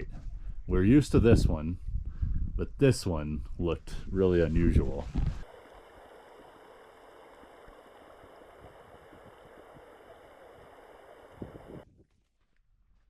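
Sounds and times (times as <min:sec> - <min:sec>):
faint outdoor hiss: 0:02.6 - 0:12.0.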